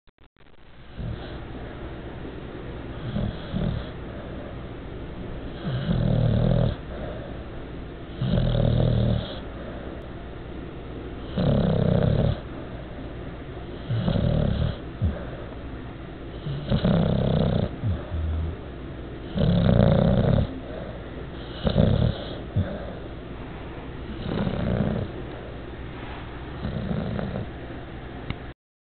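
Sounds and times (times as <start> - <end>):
dog snoring: 0.9 - 1.5, 2.9 - 4.5, 5.5 - 7.3, 8.1 - 9.5, 11.2 - 12.5, 13.7 - 15.5, 16.3 - 23.1, 24.1 - 25.5, 26.6 - 27.5.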